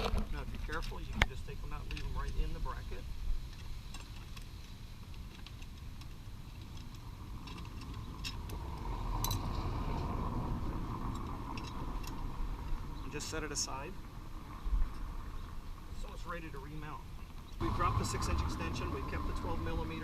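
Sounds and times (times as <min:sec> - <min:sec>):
steady low rumble: 0:04.7 - 0:20.0
metal bolts and tools clinking: 0:11.1 - 0:12.2.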